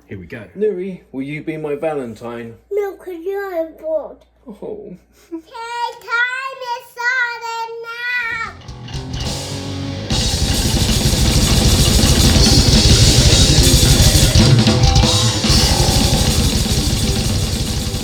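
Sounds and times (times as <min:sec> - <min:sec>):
heavy metal music: 0:08.5 - 0:18.0
pounding drum kit: 0:08.5 - 0:18.0.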